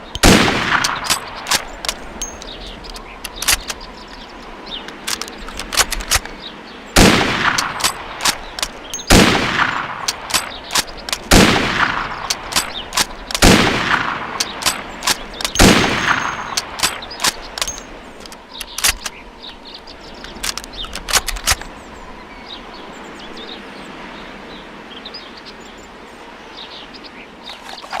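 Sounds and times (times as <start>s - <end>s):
rifle shots echoing: 0.2s - 1.6s, 7.0s - 8.4s, 9.0s - 17.9s.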